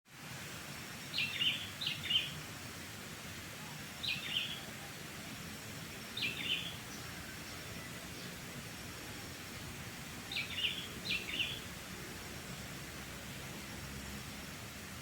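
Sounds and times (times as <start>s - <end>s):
steady background hiss: 0.1s - 15.0s
bird short high calls: 4.0s - 4.7s.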